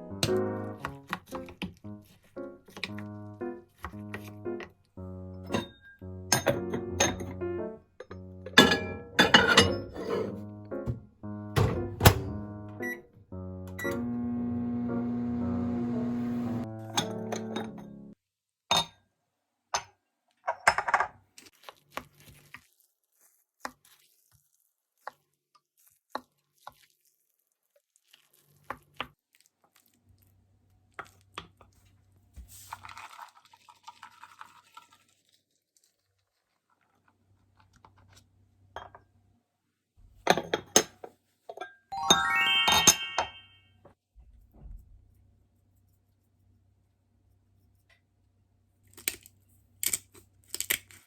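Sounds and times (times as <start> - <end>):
dishes and utensils clinking: 5.5 - 7.4, 8.0 - 10.4.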